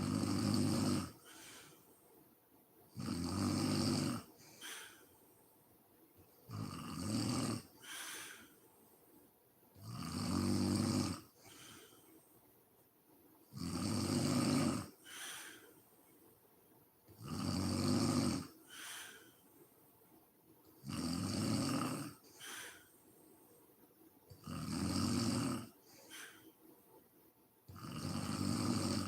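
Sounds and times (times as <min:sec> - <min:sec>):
woman snoring: 0:00.0 - 0:01.7, 0:03.0 - 0:05.0, 0:06.5 - 0:08.5, 0:09.8 - 0:11.8, 0:13.5 - 0:15.6, 0:17.2 - 0:19.2, 0:20.8 - 0:22.9, 0:24.4 - 0:26.4, 0:27.7 - 0:29.0
faint breath: 0:01.2 - 0:02.4, 0:04.3 - 0:05.8, 0:07.8 - 0:09.4, 0:11.4 - 0:12.7, 0:15.0 - 0:16.5, 0:18.6 - 0:20.2, 0:22.2 - 0:23.9, 0:25.8 - 0:27.0.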